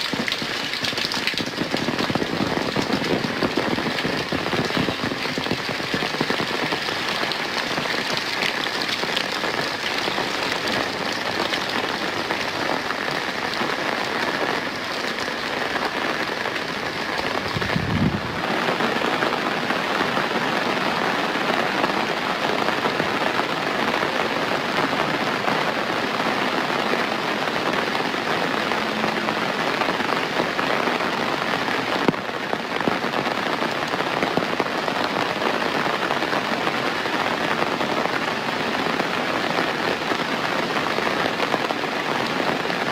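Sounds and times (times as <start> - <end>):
heavy rain falling: 0.0 - 42.9.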